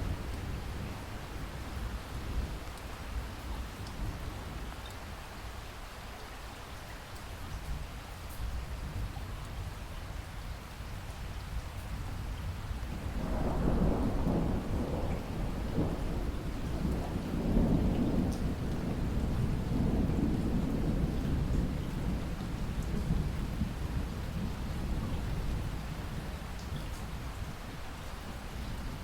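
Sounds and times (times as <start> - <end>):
steady rainfall: 0.0 - 29.0
thunder rumbling: 12.9 - 26.4.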